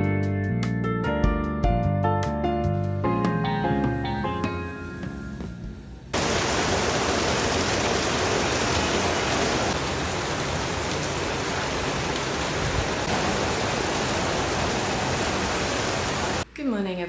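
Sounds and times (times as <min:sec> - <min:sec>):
heavy rain pouring: 0:06.2 - 0:16.4.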